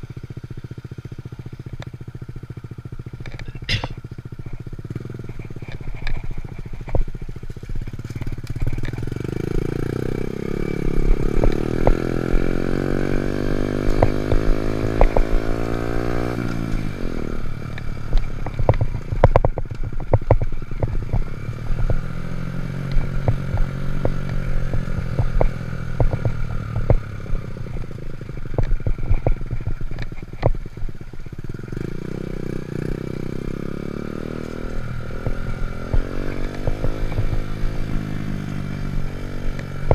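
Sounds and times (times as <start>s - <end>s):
small motorbike engine revving: 0.0s - 39.9s
light clattering ticks: 5.3s - 9.3s, 13.8s - 15.7s, 17.6s - 22.2s, 22.8s - 31.4s, 34.4s - 39.9s.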